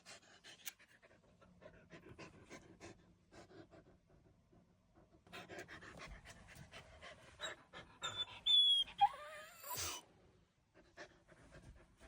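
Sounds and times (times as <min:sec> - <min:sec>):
puppy yawning with squeaky whine: 0:08.0 - 0:10.0.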